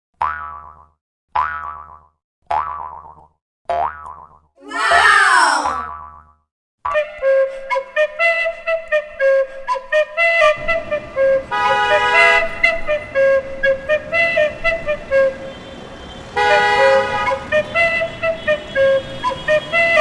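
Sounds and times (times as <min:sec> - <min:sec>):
flute-like background tune: 0:06.9 - 0:15.5, 0:16.4 - 0:20.0.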